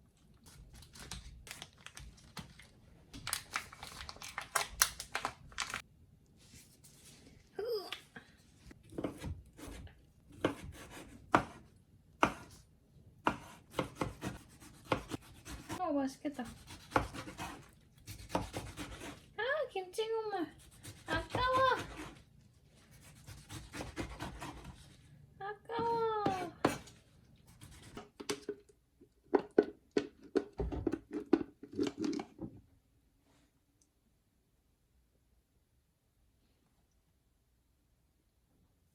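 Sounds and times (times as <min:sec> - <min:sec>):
knife chopping on cutting board: 0:08.9 - 0:11.6, 0:12.2 - 0:12.6, 0:13.2 - 0:15.8, 0:16.4 - 0:19.2, 0:20.6 - 0:22.2, 0:23.0 - 0:24.9, 0:26.2 - 0:26.9.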